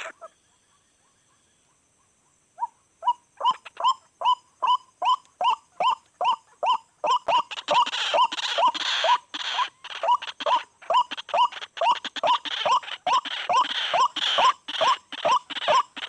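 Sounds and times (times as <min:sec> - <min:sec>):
rasping bird noise: 0:07.2 - 0:16.0.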